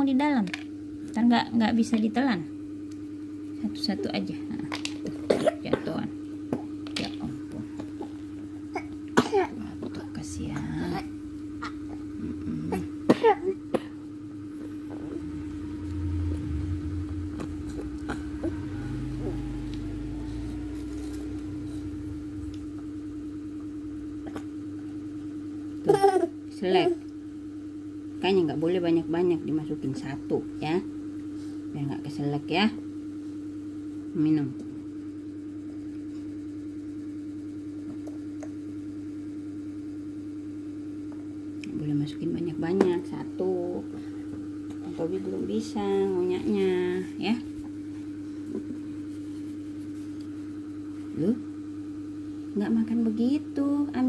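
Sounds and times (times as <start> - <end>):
steady hum: 0.0 - 54.0
passing vehicle engine rumble: 14.8 - 23.2.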